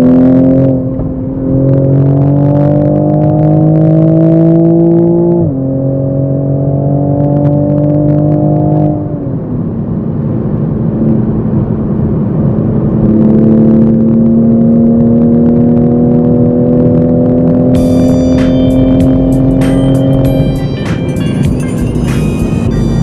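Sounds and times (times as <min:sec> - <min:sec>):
car engine accelerating: 0:00.0 - 0:23.0.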